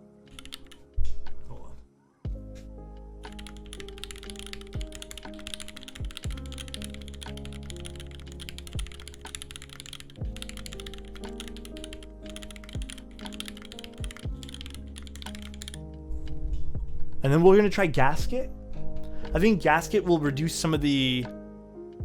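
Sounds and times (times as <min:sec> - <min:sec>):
background music: 0:00.0 - 0:22.0
mechanical keyboard typing: 0:00.3 - 0:00.8, 0:03.3 - 0:15.8.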